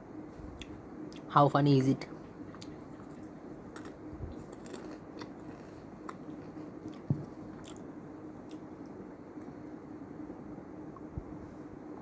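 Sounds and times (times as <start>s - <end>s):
chewing crunchy snacks: 2.5s - 9.6s.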